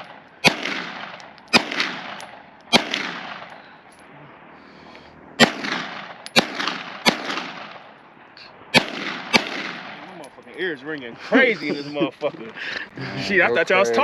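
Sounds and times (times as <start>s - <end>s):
gunshots with echo: 0.0s - 3.6s, 5.4s - 7.9s, 8.7s - 10.2s.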